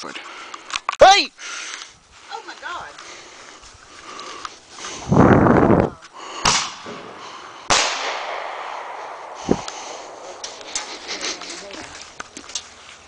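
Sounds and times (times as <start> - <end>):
firework bangs: 6.4 - 11.1.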